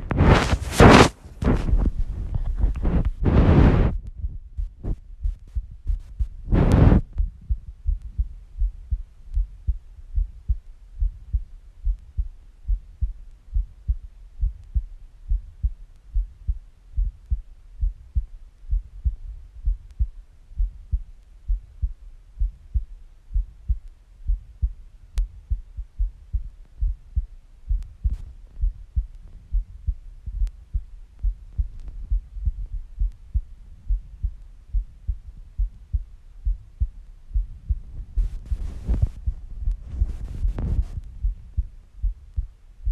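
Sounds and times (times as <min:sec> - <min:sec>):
heartbeat thumps: 0:00.0 - 0:42.9.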